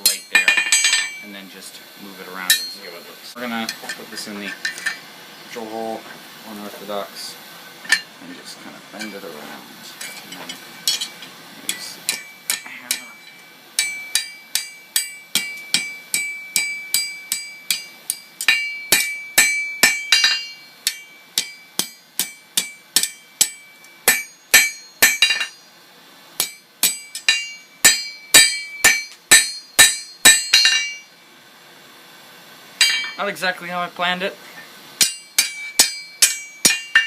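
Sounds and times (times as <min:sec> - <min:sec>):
hammer ringing on anvil: 0:00.0 - 0:01.4, 0:02.5 - 0:02.9, 0:10.0 - 0:25.7, 0:26.4 - 0:31.1, 0:32.8 - 0:33.2, 0:35.0 - 0:37.0.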